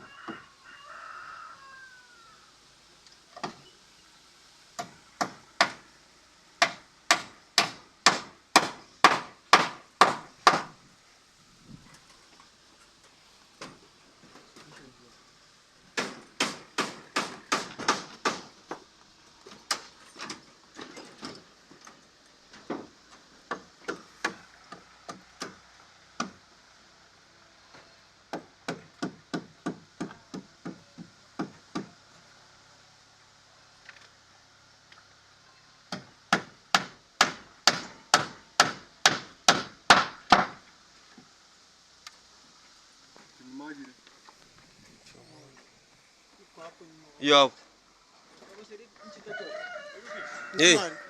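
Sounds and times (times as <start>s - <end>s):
hammer driving nails into wood: 6.6s - 10.7s, 16.0s - 18.8s, 28.3s - 31.9s, 35.9s - 40.6s.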